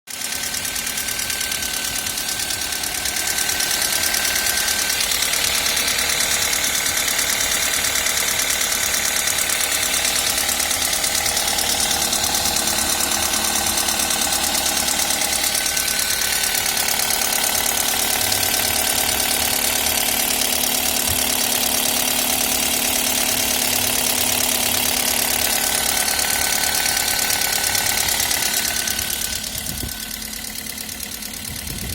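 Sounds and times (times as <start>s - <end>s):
car engine running: 0.1s - 31.9s.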